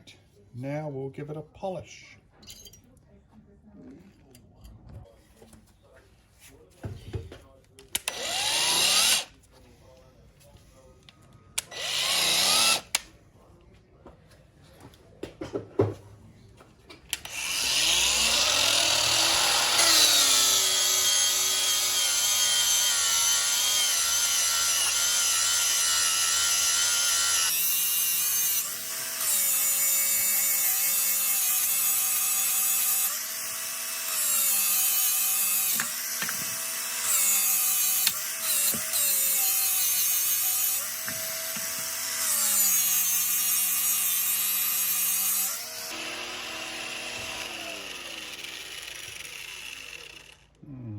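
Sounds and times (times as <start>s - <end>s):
polishing tool whining: 11.7s - 12.9s, 17.2s - 50.4s.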